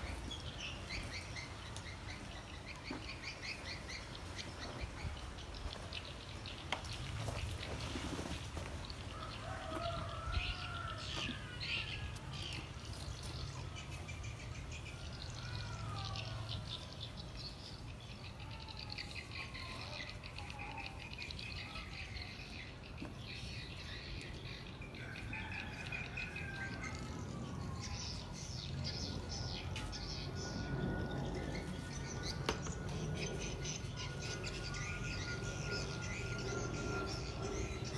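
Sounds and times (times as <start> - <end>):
birds chirping and calling: 0.0 - 37.9
low hum: 26.7 - 37.9.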